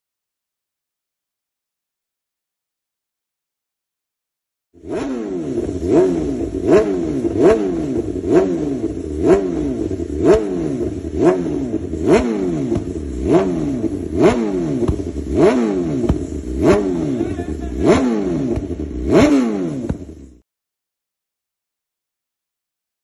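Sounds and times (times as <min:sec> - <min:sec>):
motorcycle engine revving: 0:04.8 - 0:20.4.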